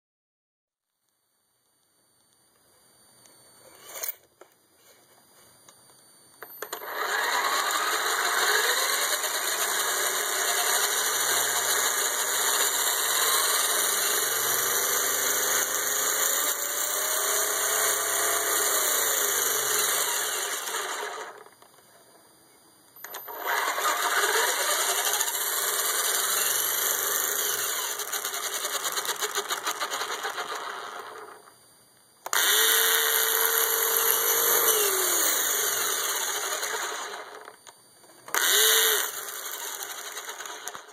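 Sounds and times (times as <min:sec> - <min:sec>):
electric motor whine: 0:06.4 - 0:21.6, 0:23.0 - 0:31.5, 0:32.3 - 0:37.6, 0:38.2 - 0:40.9
clicking from toy truck: 0:36.4 - 0:40.9.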